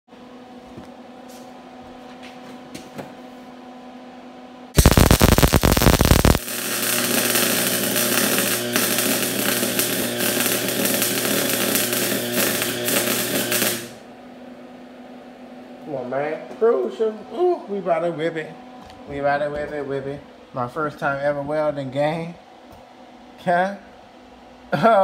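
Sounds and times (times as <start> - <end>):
welding arc crackling: 4.8 - 14.1
welder low hum: 4.8 - 15.0.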